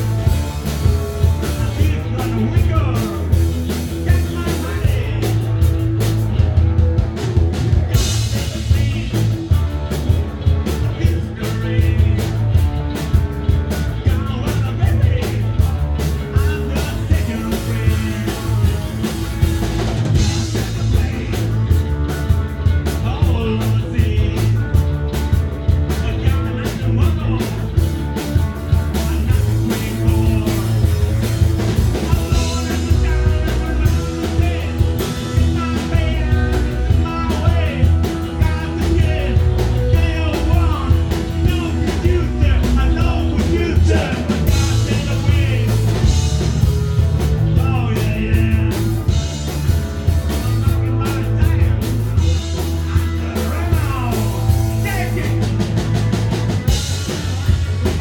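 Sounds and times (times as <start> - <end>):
person singing: 0.0 - 5.6, 8.0 - 9.9, 10.6 - 12.7, 13.7 - 19.4, 20.1 - 24.9, 28.7 - 46.4, 47.5 - 55.9
punk rock band playing: 0.0 - 58.0.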